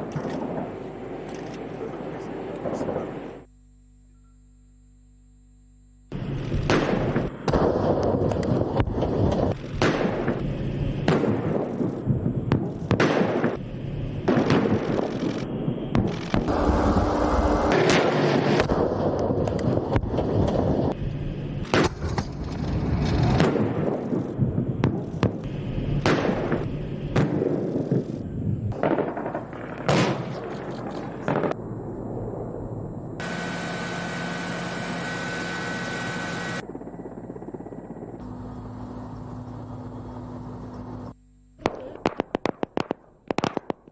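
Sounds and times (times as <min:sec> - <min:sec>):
engine noise with high whine: 0:00.0 - 0:28.8, 0:30.5 - 0:42.0
weapons firing: 0:06.2 - 0:13.6, 0:14.2 - 0:20.8, 0:21.6 - 0:31.6, 0:41.6 - 0:43.9
heavy rumbling: 0:13.5 - 0:33.6.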